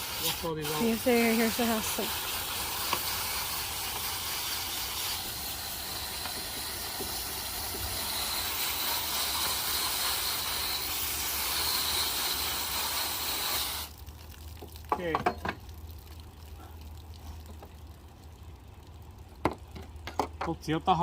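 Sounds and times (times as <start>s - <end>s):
water running from a tap: 0.0s - 18.6s.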